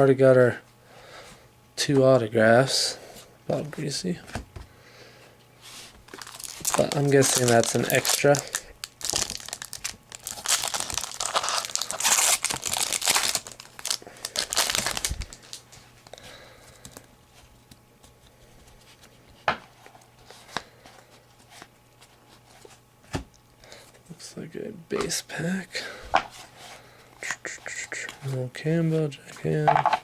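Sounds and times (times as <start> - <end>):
wrapper tearing and crinkling: 6.1 - 15.6.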